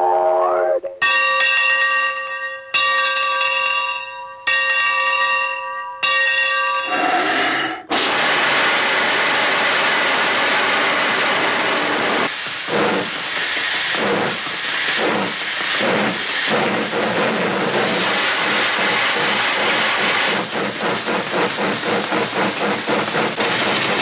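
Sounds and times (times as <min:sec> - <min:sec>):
locomotive bell ringing: 0:01.0 - 0:07.0
steam hissing: 0:06.9 - 0:24.0.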